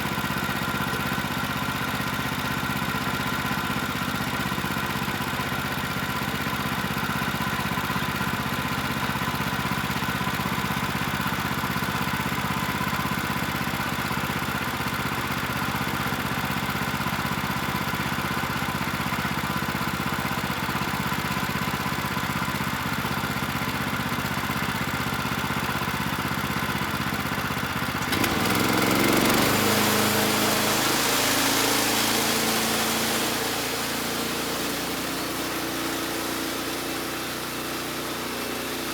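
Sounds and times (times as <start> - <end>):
gas engine running: 0.0 - 38.9
saw blade hissing through wood: 28.1 - 38.9.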